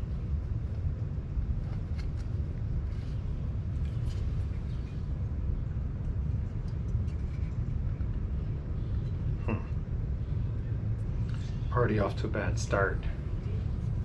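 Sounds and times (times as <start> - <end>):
low background rumble: 0.0 - 14.0.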